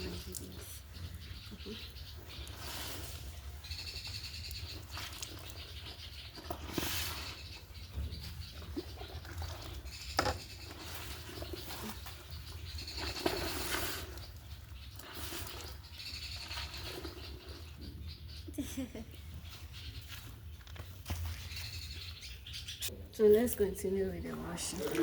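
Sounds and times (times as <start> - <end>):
wet cloth swishing in water: 24.3 - 25.0.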